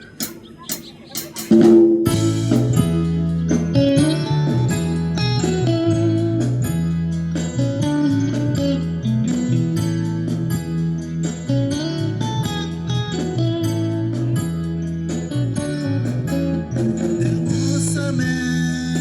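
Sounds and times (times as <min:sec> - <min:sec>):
steady drum beat: 0:00.0 - 0:08.8
plucked guitar: 0:00.0 - 0:19.0
held bass notes: 0:01.4 - 0:19.0.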